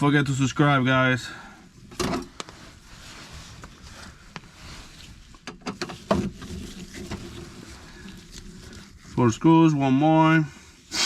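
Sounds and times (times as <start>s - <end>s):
faint handling noise: 1.8s - 9.4s.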